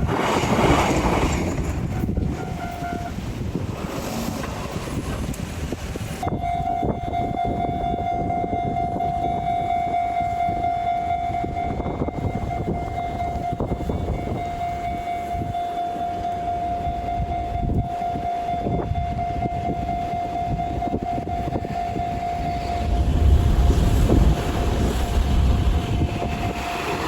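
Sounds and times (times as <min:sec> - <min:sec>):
passing train rumble: 0:00.0 - 0:27.0
level crossing alarm ringing: 0:06.2 - 0:23.1.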